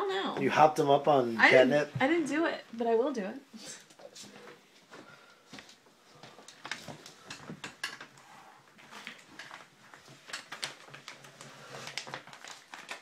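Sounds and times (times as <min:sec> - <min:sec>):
clicks taps and rustles of handling: 0:04.9 - 0:13.0.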